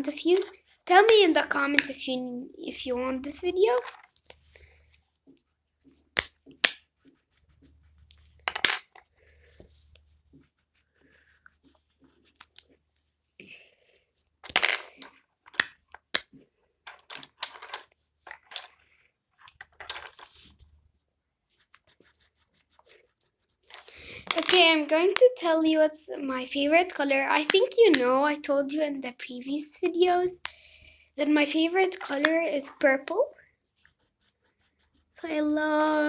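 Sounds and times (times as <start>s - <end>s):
crayon scratching on paper: 2.8s - 12.8s, 21.5s - 25.8s, 31.2s - 36.0s.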